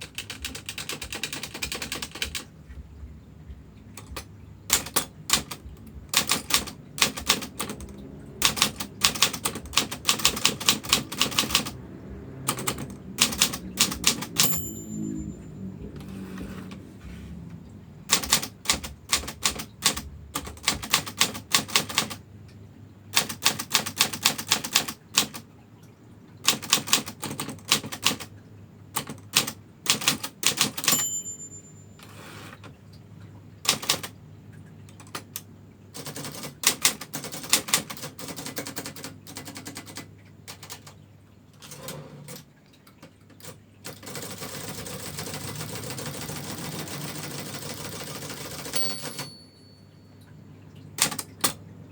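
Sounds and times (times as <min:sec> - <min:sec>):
typewriter key strikes: 0:00.0 - 0:02.5, 0:04.0 - 0:11.8, 0:12.5 - 0:14.8, 0:18.1 - 0:22.2, 0:23.2 - 0:25.4, 0:26.5 - 0:28.3, 0:29.0 - 0:31.4, 0:33.7 - 0:34.1, 0:36.0 - 0:40.9, 0:47.9 - 0:49.5
typewriter bell ringing: 0:13.2 - 0:16.1, 0:30.6 - 0:32.4, 0:46.3 - 0:50.2.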